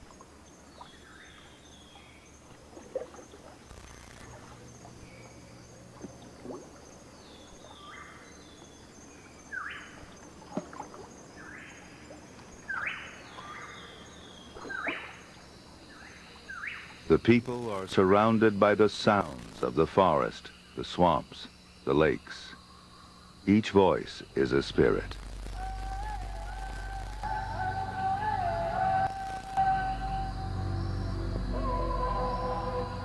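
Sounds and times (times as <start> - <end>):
high insect drone: 0.0 - 33.0.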